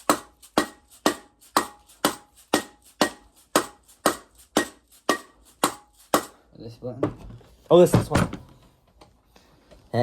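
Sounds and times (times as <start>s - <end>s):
hammer pounding on metal: 0.0s - 6.5s.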